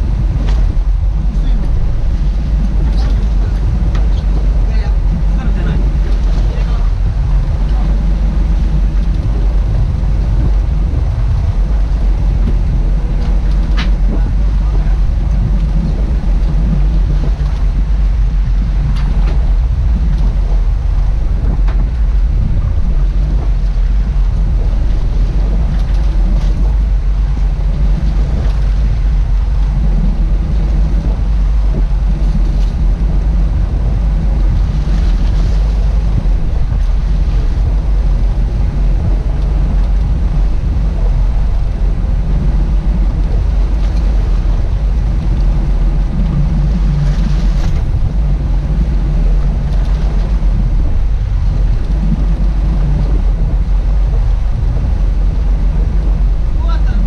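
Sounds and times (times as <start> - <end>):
boat engine drone: 0.0 - 57.0
water noise: 0.0 - 57.0
wind: 0.0 - 57.0.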